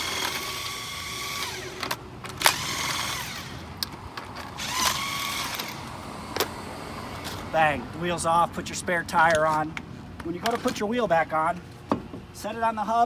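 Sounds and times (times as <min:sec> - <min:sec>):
impact wrench motor whine: 0:00.0 - 0:03.9, 0:04.5 - 0:07.4.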